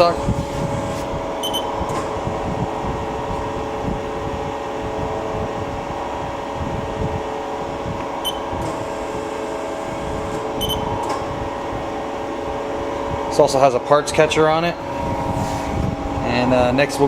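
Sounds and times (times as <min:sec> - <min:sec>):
short high beeps: 0:01.4 - 0:01.7, 0:08.2 - 0:08.4, 0:10.6 - 0:10.9.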